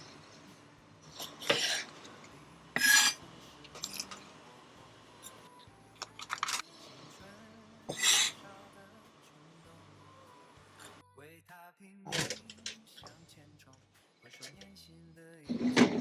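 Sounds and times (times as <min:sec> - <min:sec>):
utensils and dishes clattering: 0:01.1 - 0:02.1, 0:02.8 - 0:04.3, 0:06.0 - 0:06.7, 0:07.9 - 0:08.4, 0:12.1 - 0:12.8, 0:15.5 - 0:16.0.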